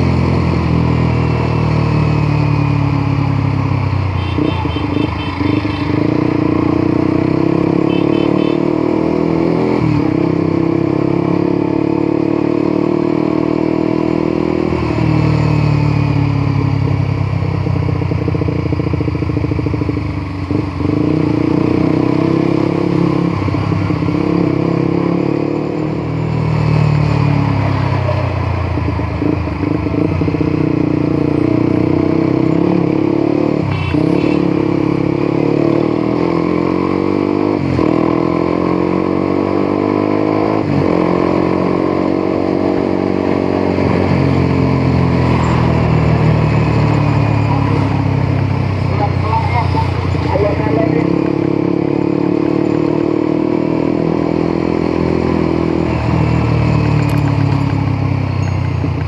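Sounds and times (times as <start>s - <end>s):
motorcycle engine changing gear: 55.8s - 59.0s.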